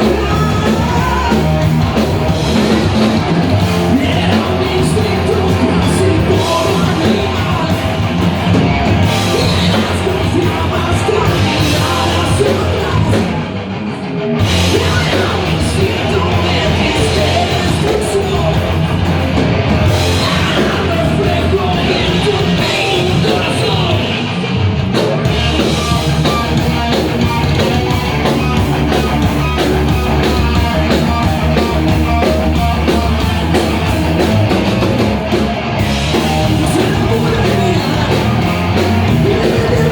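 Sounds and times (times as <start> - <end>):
rock band playing: 0.0 - 39.9.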